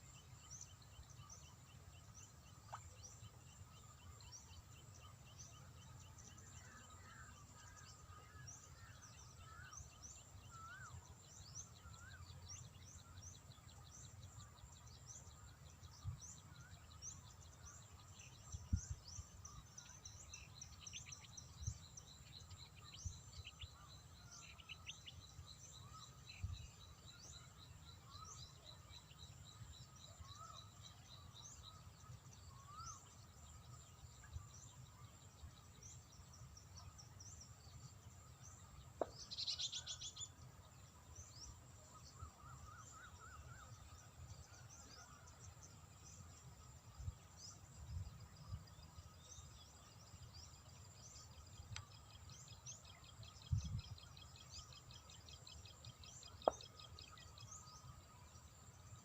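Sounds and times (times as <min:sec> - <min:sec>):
birds chirping: 0:00.0 - 0:59.0.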